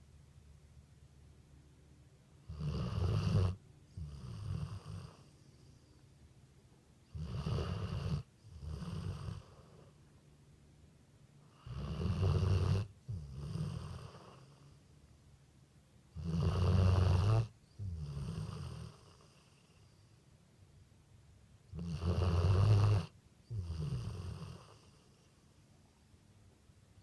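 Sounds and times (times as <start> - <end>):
dog snoring: 2.4 - 5.7, 7.1 - 10.0, 11.5 - 14.8, 16.1 - 20.0, 21.7 - 25.4.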